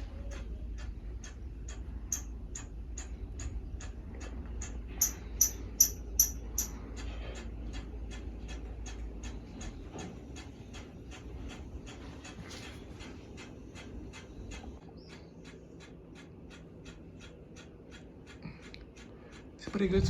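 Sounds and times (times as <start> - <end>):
ceiling fan ticking: 0.0 - 20.0
fan low hum: 0.0 - 20.0
sharp high-pitched sounds: 5.0 - 6.7.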